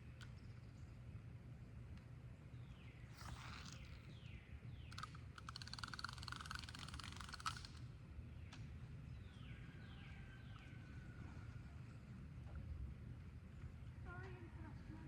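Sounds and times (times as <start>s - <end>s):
bird rattling chatter: 4.9s - 7.8s.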